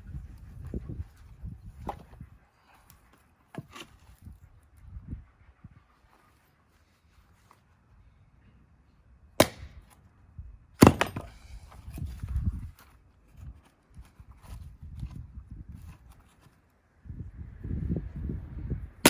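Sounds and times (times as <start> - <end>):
axe splitting wood: 9.4 - 10.0, 10.8 - 12.0.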